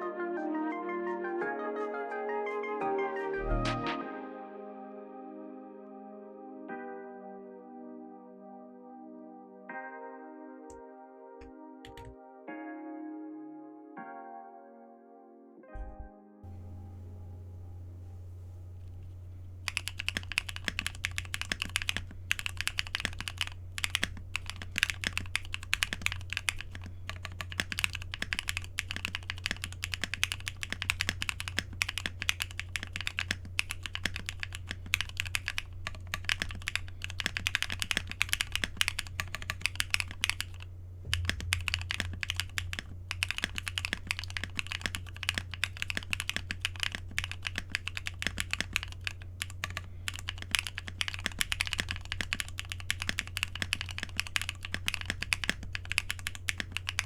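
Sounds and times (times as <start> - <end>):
mechanical keyboard typing: 11.8 - 12.1, 19.0 - 57.0.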